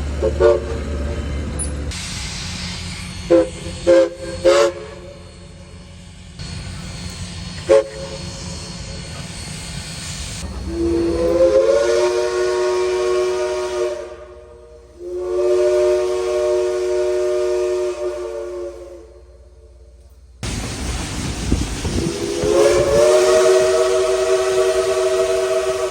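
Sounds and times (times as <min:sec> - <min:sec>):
steam hissing: 0:00.0 - 0:19.8, 0:20.4 - 0:25.9
steam whistle blasts: 0:00.2 - 0:00.8, 0:02.2 - 0:05.6, 0:07.6 - 0:09.4, 0:10.4 - 0:20.0, 0:22.0 - 0:25.9.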